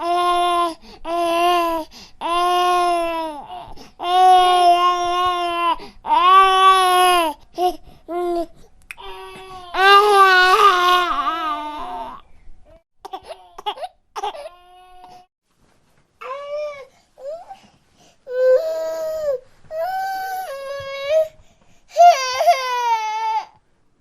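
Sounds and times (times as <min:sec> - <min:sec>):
baby crying: 0:09.0 - 0:12.2.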